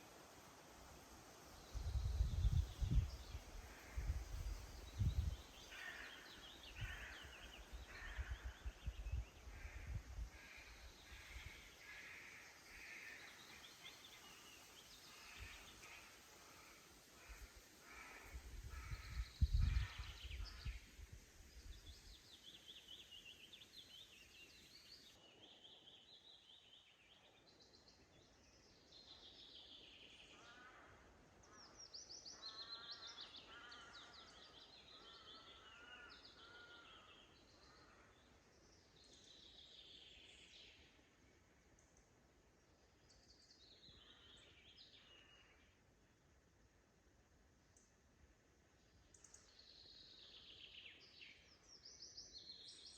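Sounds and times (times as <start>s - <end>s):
songbirds singing: 1.4s - 45.9s, 48.7s - 52.9s
wind rumble on microphone: 1.6s - 5.5s, 18.3s - 22.1s.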